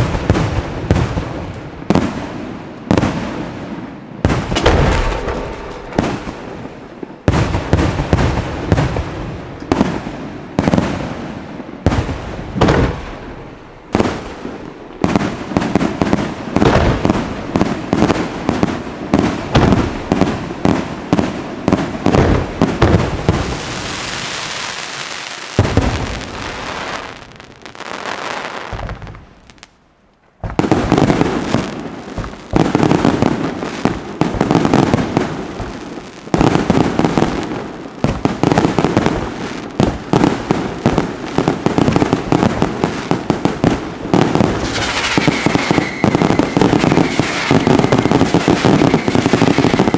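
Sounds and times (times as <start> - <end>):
fireworks banging: 0.0 - 49.9
fireworks hissing: 44.1 - 49.9.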